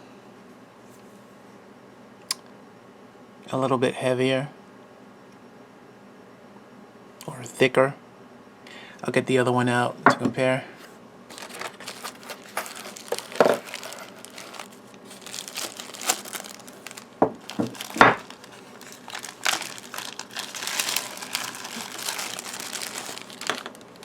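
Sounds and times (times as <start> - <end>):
packaging crinkling and rustling: 11.3 - 24.0.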